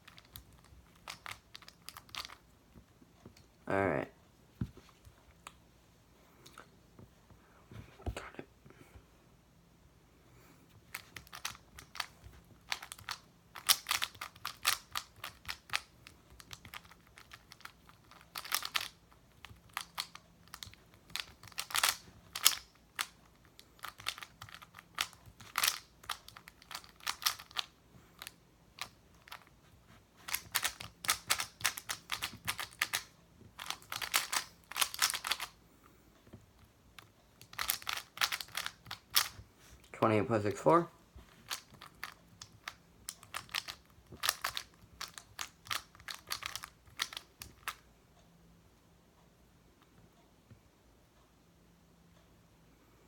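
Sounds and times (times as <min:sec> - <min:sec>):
puzzle cube plastic clicking: 0:00.0 - 0:02.4, 0:10.9 - 0:29.6, 0:30.2 - 0:35.6, 0:36.4 - 0:39.9, 0:41.4 - 0:47.8.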